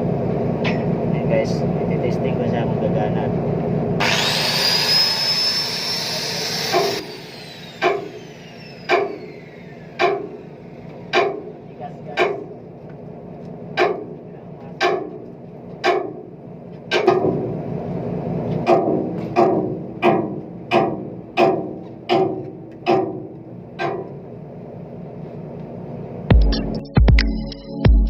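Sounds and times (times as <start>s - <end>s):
sharp knocks: 7.8s - 8.1s, 8.9s - 9.2s, 10.0s - 10.4s, 11.1s - 11.5s, 12.1s - 12.6s, 13.8s - 14.2s, 14.8s - 16.3s, 16.9s - 17.6s, 18.6s - 24.2s.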